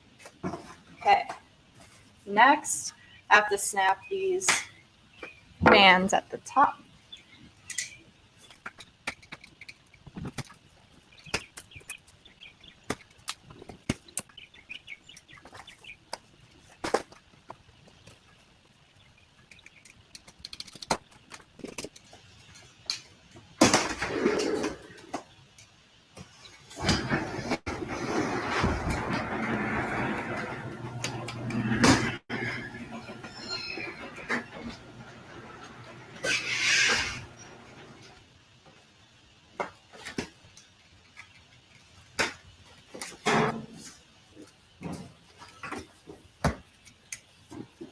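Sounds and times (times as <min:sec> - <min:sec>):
cardboard scraping and rustling: 0:26.8 - 0:30.4.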